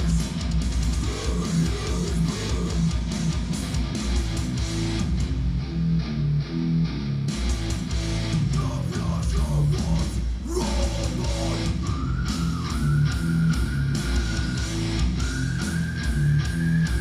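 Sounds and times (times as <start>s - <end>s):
drums: 0.0s - 17.0s
low guitar riff: 1.8s - 8.6s.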